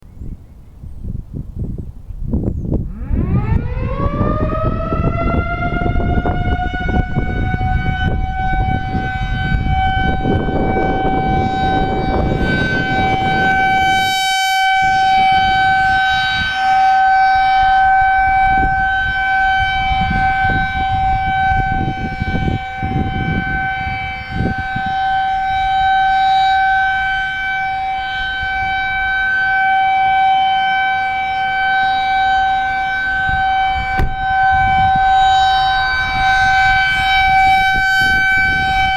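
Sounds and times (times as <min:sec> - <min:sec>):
rotating warning siren: 0:02.4 - 0:38.9
low rumbling noise: 0:33.0 - 0:38.9.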